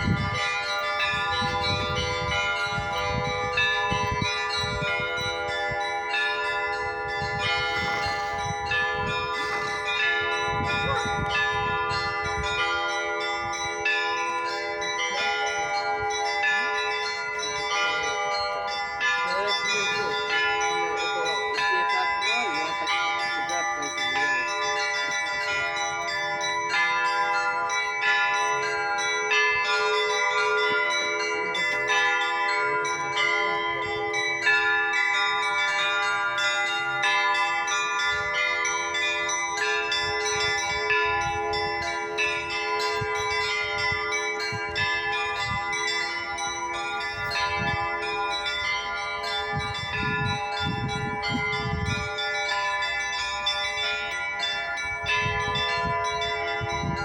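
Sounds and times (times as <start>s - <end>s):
church bells pealing: 0.0s - 57.0s.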